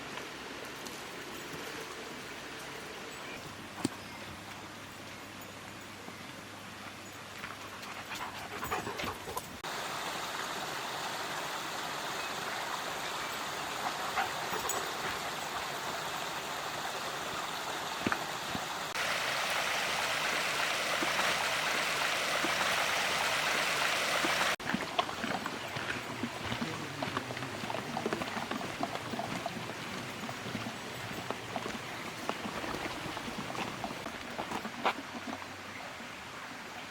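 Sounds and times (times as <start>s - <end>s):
stream water flowing: 9.1s - 36.9s.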